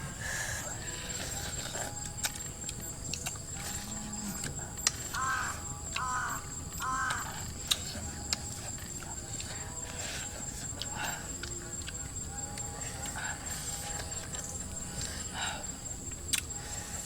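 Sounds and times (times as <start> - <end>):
bird giving harsh calls: 0.0 - 12.2
high insect-like tone: 0.0 - 17.0
sharp clicks: 16.1 - 16.6.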